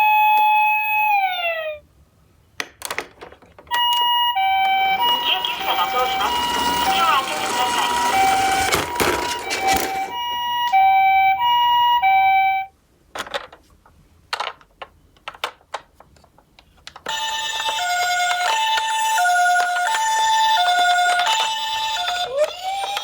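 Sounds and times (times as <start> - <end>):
two-tone ambulance siren: 3.7 - 12.7, 17.1 - 23.0.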